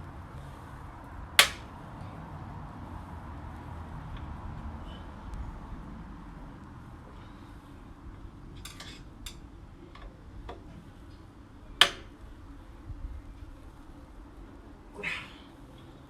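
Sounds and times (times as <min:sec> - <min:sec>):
metallic clicks of hand tools: 0:01.4 - 0:01.6.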